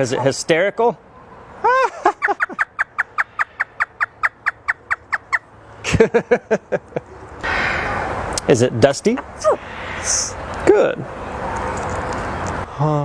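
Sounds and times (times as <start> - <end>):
parrot imitating laughter: 1.6 - 5.0.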